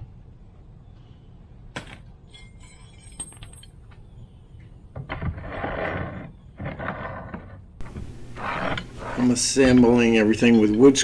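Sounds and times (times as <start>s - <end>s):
metallic clinks and taps: 2.3s - 4.0s.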